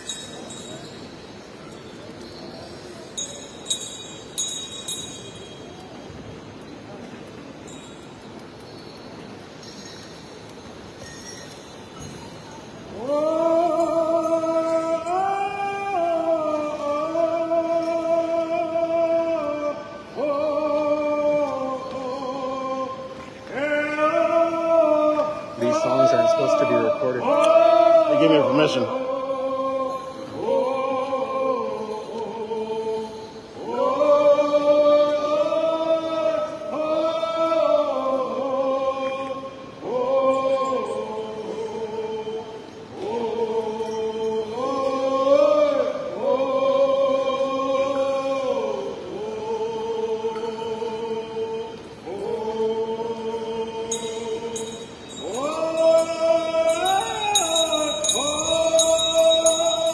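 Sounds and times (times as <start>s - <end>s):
high ringing: 0.0s - 6.8s, 7.6s - 16.0s, 53.2s - 59.9s
men singing together: 12.9s - 59.9s.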